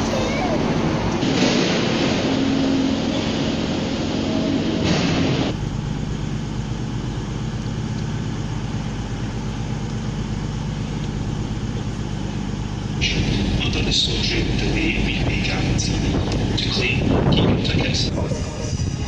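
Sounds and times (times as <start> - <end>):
train rushing: 0.0 - 5.6, 12.6 - 19.0
train engine hum with deep rumble: 0.0 - 19.0.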